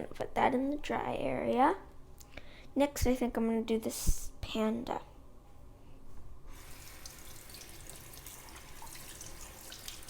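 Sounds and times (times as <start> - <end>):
tap water running into sink: 6.5 - 10.0.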